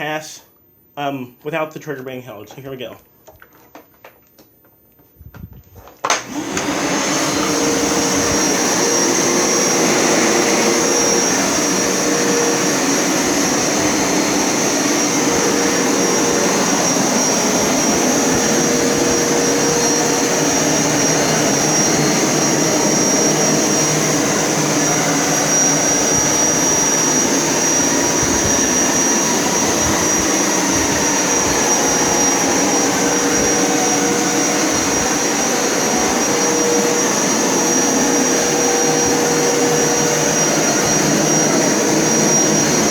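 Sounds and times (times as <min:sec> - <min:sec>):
carpet cleaner motor whining: 0:06.0 - 0:42.9.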